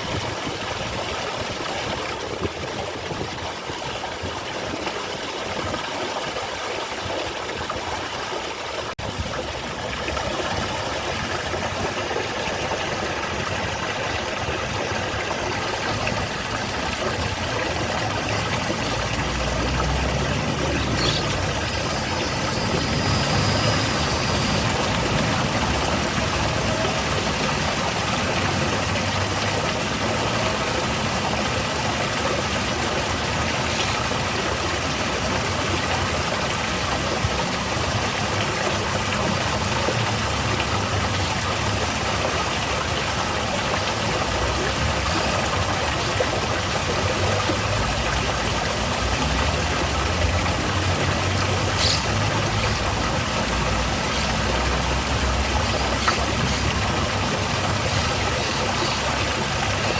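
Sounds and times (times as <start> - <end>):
water falling in waterfall: 0.0 - 59.9.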